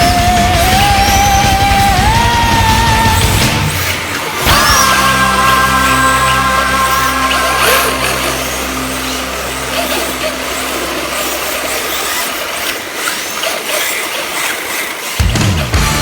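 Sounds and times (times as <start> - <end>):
music bass: 0.0 - 11.5, 15.2 - 16.0
remote control cars running: 0.0 - 16.0.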